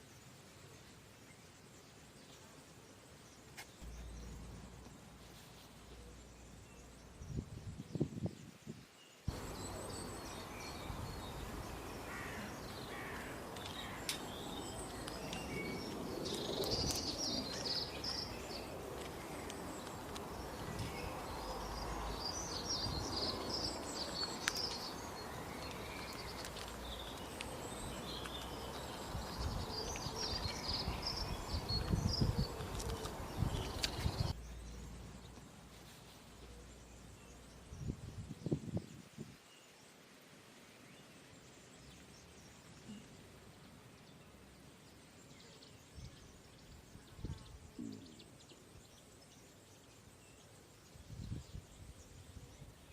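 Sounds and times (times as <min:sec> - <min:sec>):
steady background hiss: 0:00.0 - 0:52.9
birds chirping: 0:02.3 - 0:35.5.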